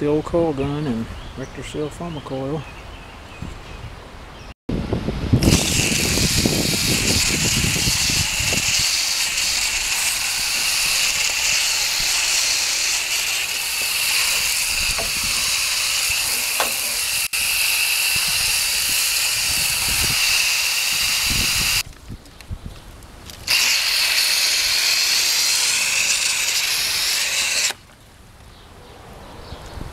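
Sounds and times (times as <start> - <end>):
spray hiss: 5.4 - 21.8, 23.5 - 27.8.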